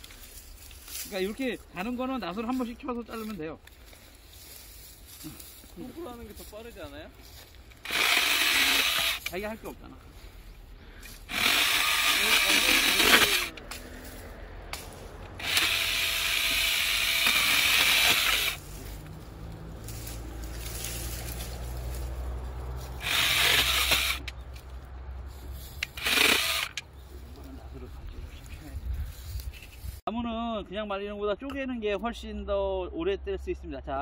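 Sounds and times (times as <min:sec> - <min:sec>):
power saw cutting wood: 0:07.8 - 0:09.5, 0:11.2 - 0:13.9, 0:14.8 - 0:21.8, 0:22.8 - 0:24.4, 0:25.8 - 0:26.9.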